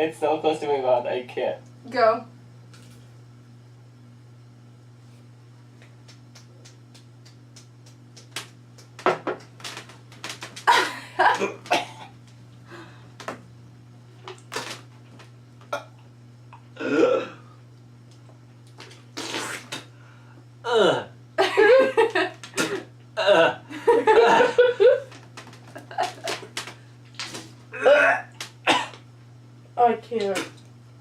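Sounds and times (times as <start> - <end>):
faint steady hum: 0.0 - 31.0
person gagging and retching: 10.6 - 12.1, 14.4 - 14.8, 15.7 - 16.0, 16.6 - 17.4, 18.8 - 19.9, 20.7 - 21.1, 22.5 - 23.6, 27.2 - 29.0
person coughing: 10.7 - 12.1, 16.8 - 17.5, 22.6 - 23.6, 27.8 - 29.0.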